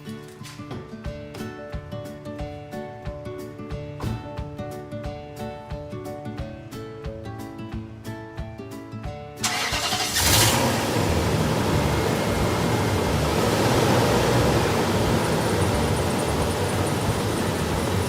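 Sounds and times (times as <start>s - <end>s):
background music: 0.0s - 18.0s
car engine starting and running: 9.4s - 18.0s.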